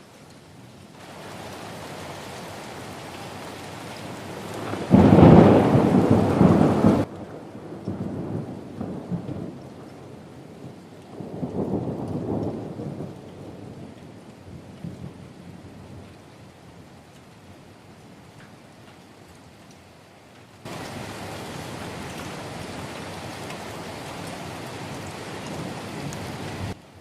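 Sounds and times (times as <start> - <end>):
steady rain: 0.0 - 27.0
rolling thunder rumbles: 4.2 - 16.1
thunder crack: 4.6 - 7.1.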